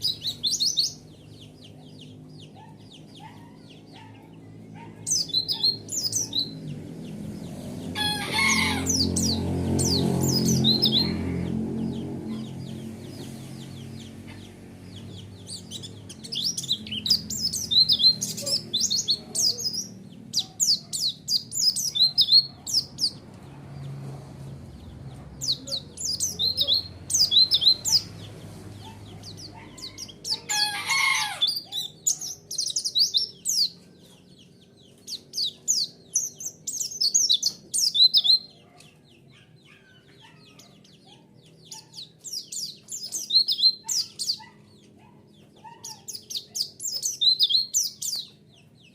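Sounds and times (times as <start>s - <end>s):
bird twittering song: 0.0s - 48.9s.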